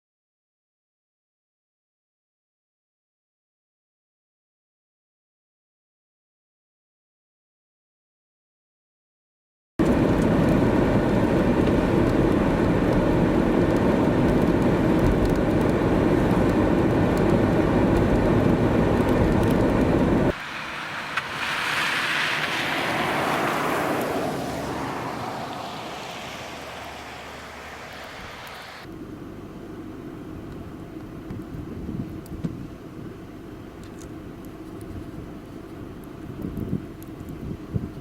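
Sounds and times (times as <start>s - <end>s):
vehicle driving past on snow: 16.0s - 28.9s.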